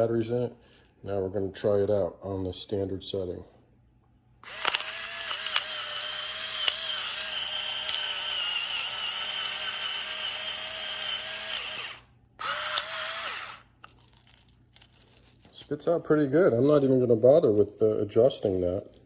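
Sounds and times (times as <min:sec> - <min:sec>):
electric grinder motor whining: 0:04.4 - 0:13.7
grinding mechanism ticks: 0:04.4 - 0:14.0.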